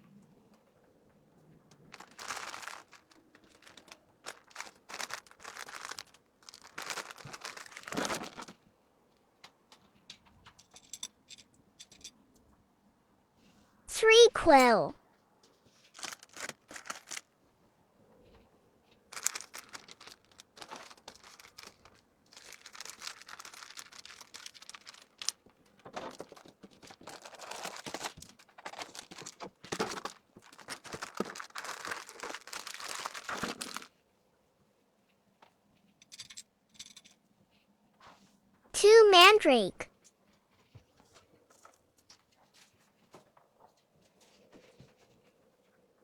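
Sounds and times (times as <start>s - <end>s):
plastic packaging crinkling: 1.8s - 8.5s, 15.9s - 17.3s, 19.1s - 33.9s.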